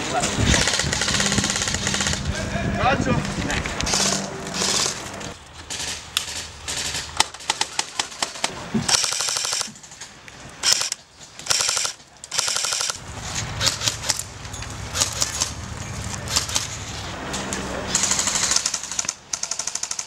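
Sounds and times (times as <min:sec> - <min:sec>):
airsoft gun full-auto bursts: 0:00.5 - 0:02.3, 0:03.9 - 0:05.0, 0:08.9 - 0:09.7, 0:10.6 - 0:13.0, 0:17.9 - 0:20.0.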